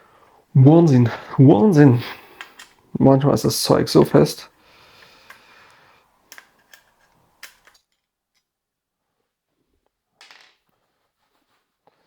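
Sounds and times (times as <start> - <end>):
hand tools clicking on metal: 6.3 - 7.9.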